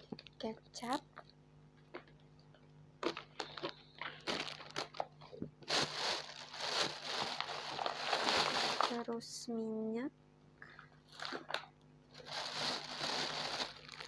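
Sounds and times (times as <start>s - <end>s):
plastic packaging crinkling: 3.0s - 9.2s, 11.1s - 14.0s.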